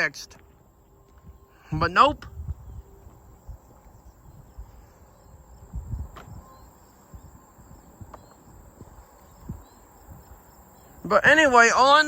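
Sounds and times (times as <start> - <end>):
insects humming: 0.0 - 12.0
wind on microphone: 1.1 - 11.9.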